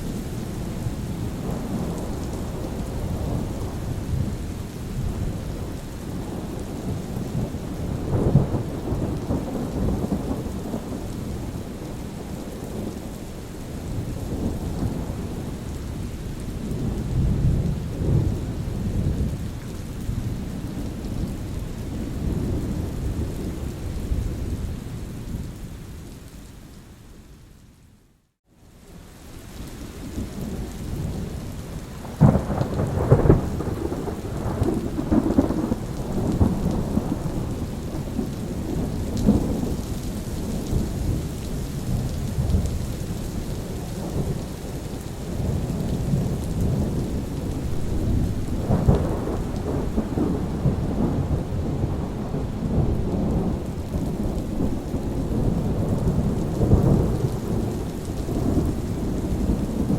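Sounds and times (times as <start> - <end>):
steady rain: 0.0 - 59.9
thunder rumbling: 30.2 - 59.9.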